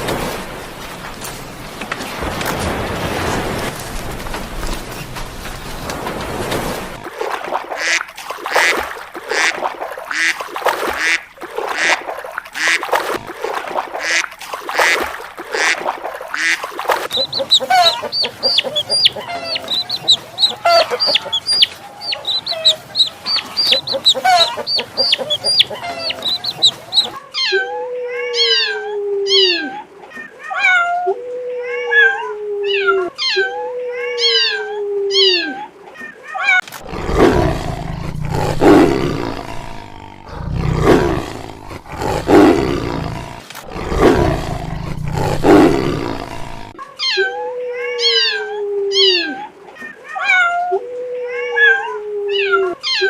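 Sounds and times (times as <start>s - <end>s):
hen clucking: 15.6s - 27.2s
low rough roaring: 36.8s - 46.8s.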